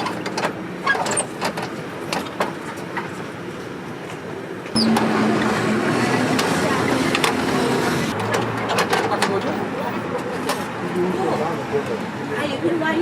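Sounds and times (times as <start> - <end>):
steady background noise: 0.0 - 13.0
low humming tone: 4.8 - 7.1.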